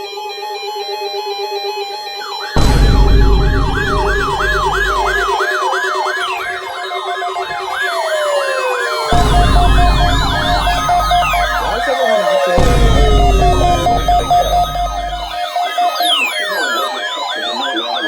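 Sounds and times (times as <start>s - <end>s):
electronic yelp siren wailing: 1.0s - 18.0s
falling siren sweeps: 2.1s - 18.0s
heavy bass drone: 2.6s - 5.4s, 8.7s - 15.4s
loud bass hit: 2.6s - 5.4s, 9.1s - 11.9s, 12.6s - 15.3s
steady electronic tone: 2.6s - 18.0s.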